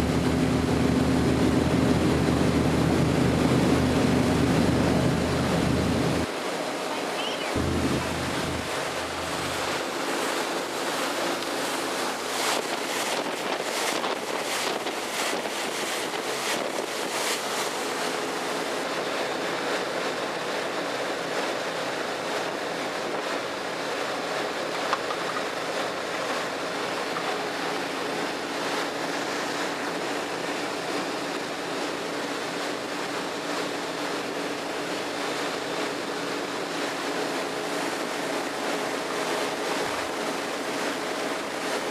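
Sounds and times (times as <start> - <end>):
low engine hum: 0.0 - 6.3, 7.2 - 10.0
wind and water rushing: 0.0 - 41.9
wind gusts buffeting microphone: 7.6 - 10.2.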